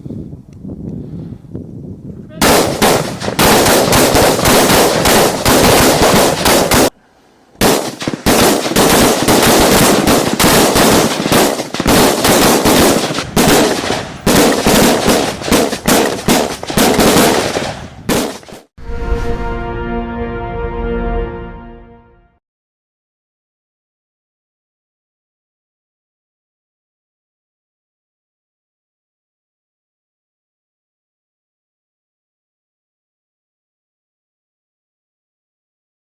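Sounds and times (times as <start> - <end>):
rapid rifle fire: 2.4 - 7.0, 7.6 - 18.7.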